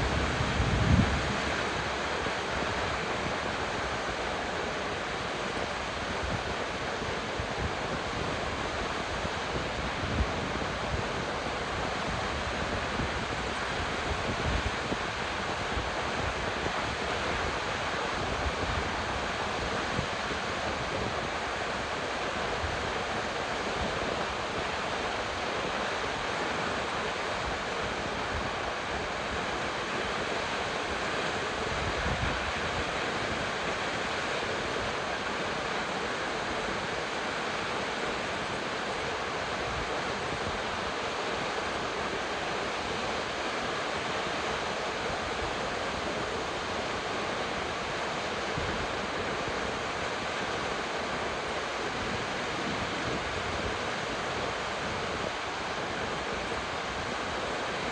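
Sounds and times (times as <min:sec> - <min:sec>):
wind buffeting microphone: 0:00.0 - 0:04.0
waterfall rushing: 0:00.0 - 0:57.9.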